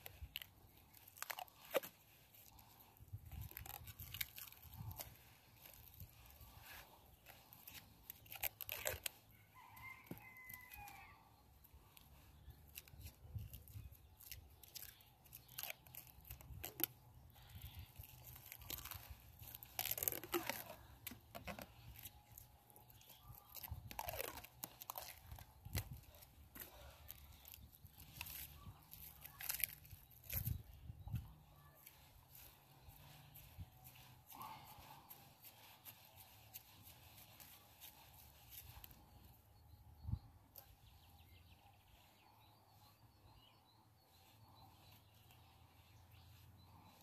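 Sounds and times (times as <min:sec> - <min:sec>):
plastic tape crinkling and tearing: 0:00.0 - 0:09.4, 0:11.8 - 0:39.4.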